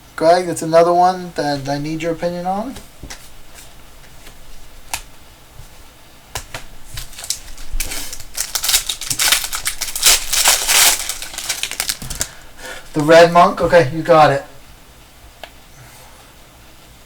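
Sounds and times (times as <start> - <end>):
trading cards clicking and crackling: 6.4 - 12.4.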